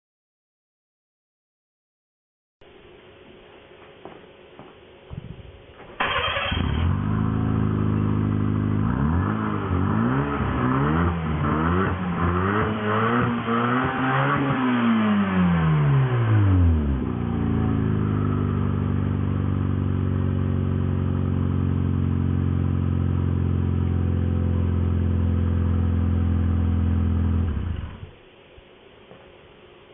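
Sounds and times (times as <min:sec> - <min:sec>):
car engine revving and idling: 0:06.2 - 0:28.2.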